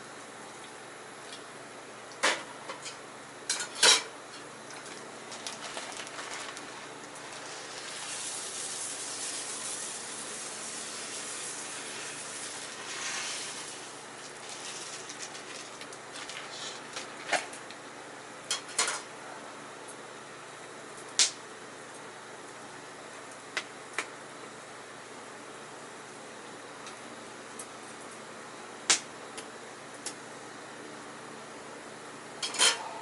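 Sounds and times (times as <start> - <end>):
food hissing in a frying pan: 6.6 - 15.8.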